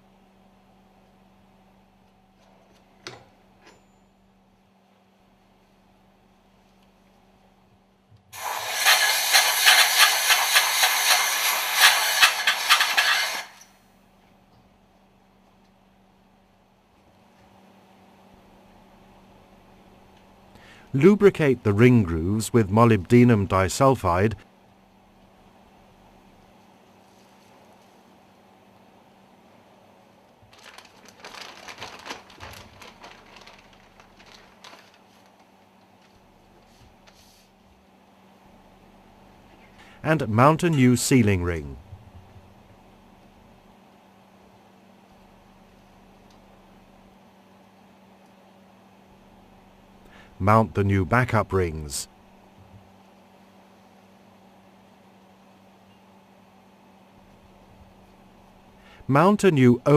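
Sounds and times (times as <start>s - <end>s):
compressed air hissing: 8.4s - 13.7s.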